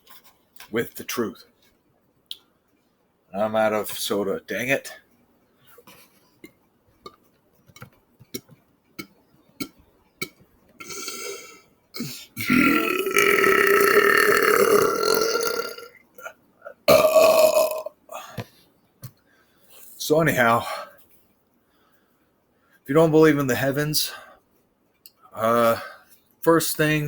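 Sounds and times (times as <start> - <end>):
man belching: 9.6 - 18.0.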